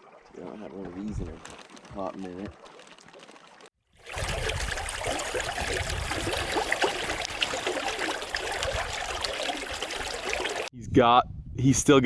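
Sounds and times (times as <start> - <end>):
small water splashes: 0.0 - 10.7
river water gurgling: 4.0 - 10.7.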